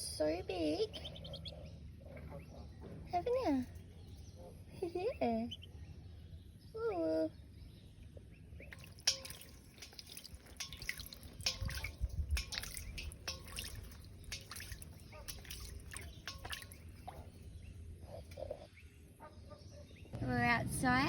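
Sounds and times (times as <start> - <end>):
water drips and splashes: 8.6 - 17.7.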